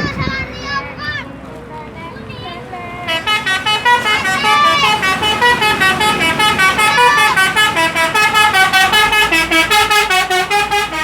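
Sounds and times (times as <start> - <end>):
musical air horn melody: 3.1 - 11.0.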